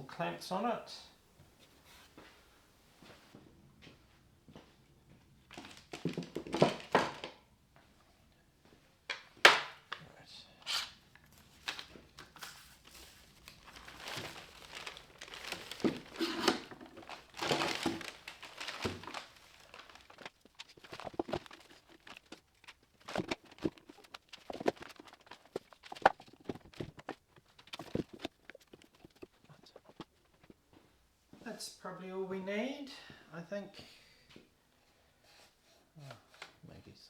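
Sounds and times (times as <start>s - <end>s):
clamps rustling and scraping: 10.7s - 30.6s.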